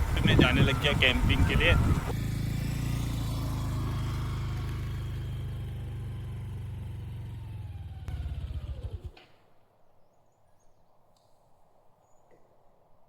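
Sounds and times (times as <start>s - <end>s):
vehicle engine humming: 0.0s - 9.3s.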